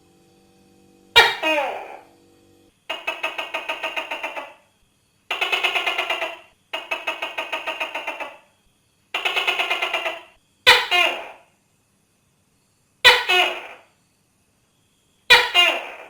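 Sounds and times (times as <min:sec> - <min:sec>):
gecko rattling chatter: 0:02.9 - 0:04.6, 0:05.3 - 0:08.5, 0:09.1 - 0:11.4, 0:15.3 - 0:16.0.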